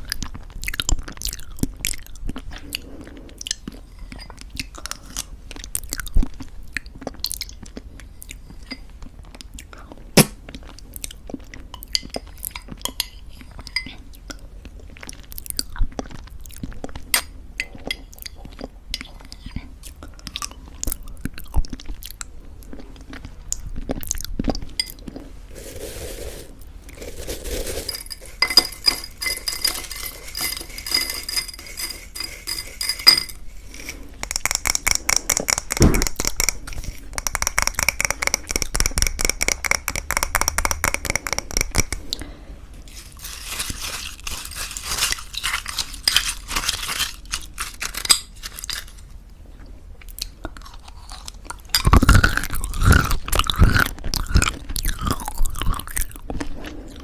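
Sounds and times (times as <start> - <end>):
spoon clinking against bowl: 27.7 - 36.6.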